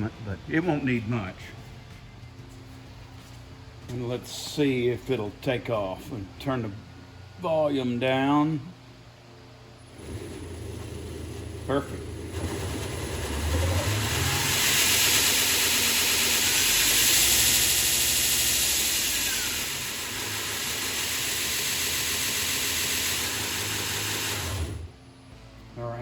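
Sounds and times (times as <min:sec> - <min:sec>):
belt grinder motor hum: 0:09.9 - 0:25.0
grinder belt hissing: 0:09.9 - 0:25.0.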